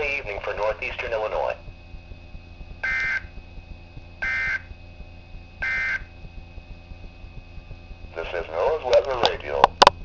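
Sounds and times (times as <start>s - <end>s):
buzzy two-tone data bursts: 2.8s - 3.4s, 4.2s - 4.8s, 5.6s - 6.2s.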